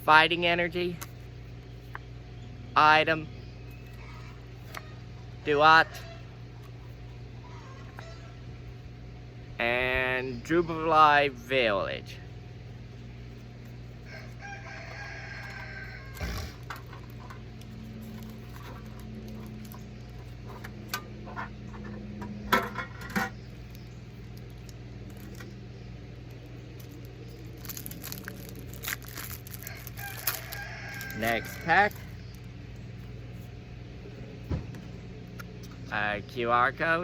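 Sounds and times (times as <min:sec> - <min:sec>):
low hum: 0:00.0 - 0:37.0
faint animal call: 0:07.4 - 0:08.5, 0:14.1 - 0:16.7
foil packs crinkling: 0:13.4 - 0:20.9, 0:23.5 - 0:32.5.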